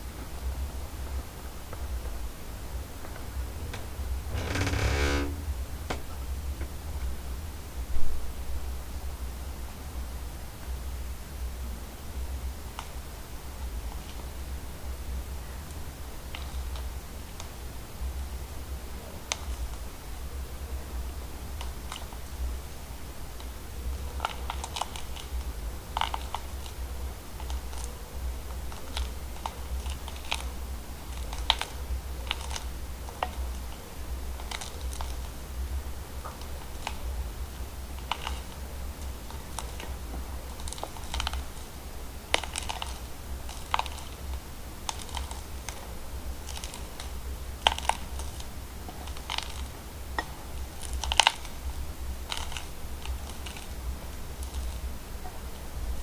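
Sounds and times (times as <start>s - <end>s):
low hum: 3.5s - 5.9s.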